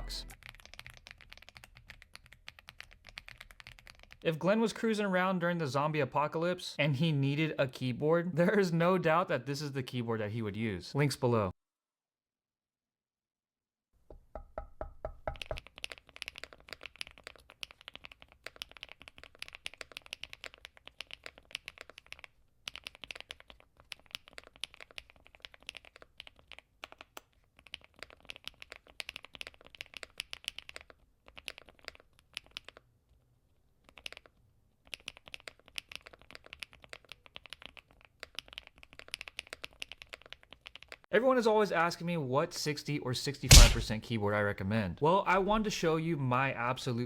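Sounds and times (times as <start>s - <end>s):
mechanical keyboard typing: 0.1s - 4.2s, 15.4s - 32.8s, 33.9s - 34.3s, 34.9s - 41.0s.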